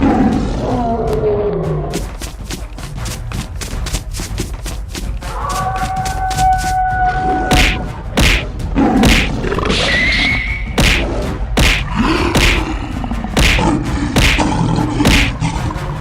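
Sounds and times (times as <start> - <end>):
background music: 0.0 - 16.0
gliding animal cries: 5.3 - 7.5
cartoon thuds and whacks: 7.5 - 9.4, 10.7 - 12.7, 13.3 - 15.4.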